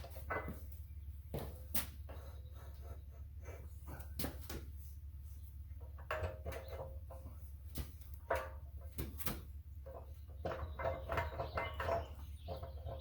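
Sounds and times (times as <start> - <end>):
metal pipe clunks and scraping: 0.0 - 2.8, 5.7 - 13.0.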